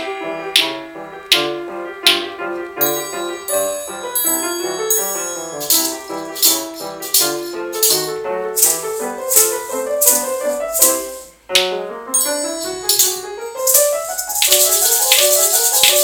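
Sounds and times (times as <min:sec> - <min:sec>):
polka melody: 0:00.0 - 0:16.0
metallophone tones: 0:02.1 - 0:16.0
shakers on the beat: 0:02.9 - 0:16.0.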